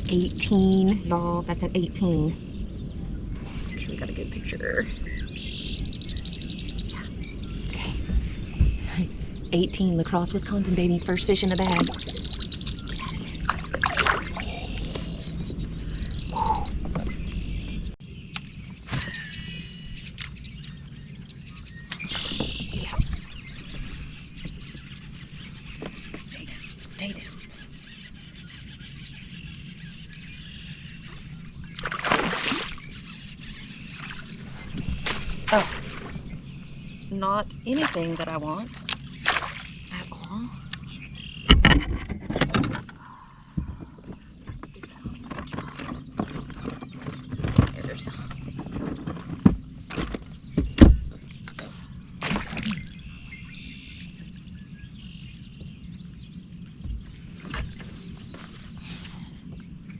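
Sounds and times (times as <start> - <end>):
birds chirping: 0.0 - 59.9
faint outdoor background: 0.0 - 59.9
low hum: 0.0 - 59.9
fish splashing in water: 11.7 - 14.9, 31.8 - 36.3, 37.7 - 40.1, 52.2 - 53.1
sharp knocks and thumps: 43.6 - 52.6.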